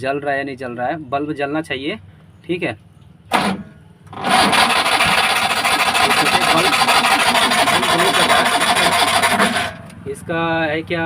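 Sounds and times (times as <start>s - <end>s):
starter motor cranking engine: 3.3s - 10.0s.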